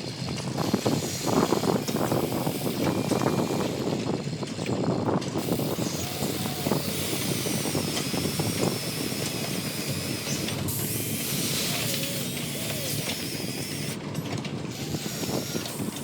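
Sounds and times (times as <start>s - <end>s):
model excavator digging in dirt: 0.0s - 16.0s.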